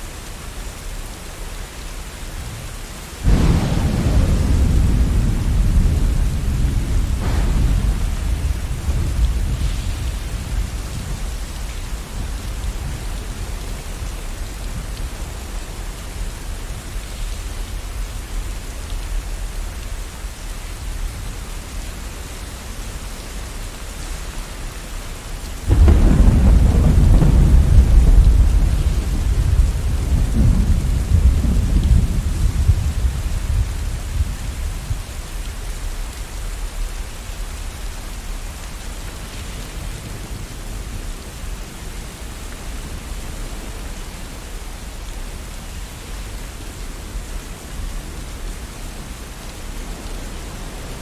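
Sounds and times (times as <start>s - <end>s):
steady rain: 0.0s - 51.0s
loud thunderclap: 3.2s - 14.0s, 25.6s - 34.6s
distant thunder rumble: 3.2s - 19.1s, 25.6s - 35.0s.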